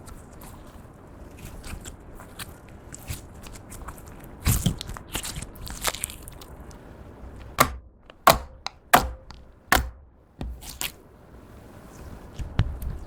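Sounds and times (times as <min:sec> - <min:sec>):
sticky crackling: 0:07.4 - 0:11.0
sharp pops: 0:07.6 - 0:10.9.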